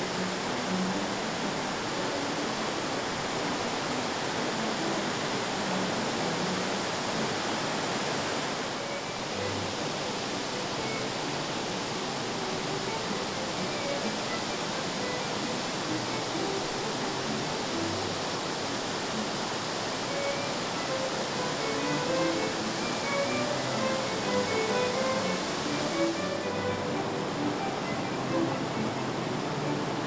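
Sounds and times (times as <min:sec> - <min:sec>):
waterfall rushing over rock: 0:00.0 - 0:30.0.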